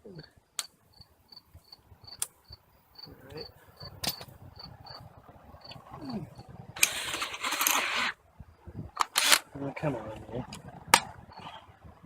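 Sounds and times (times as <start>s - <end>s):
cricket chirping: 0.0s - 12.0s
sharp clicks: 9.0s - 9.5s.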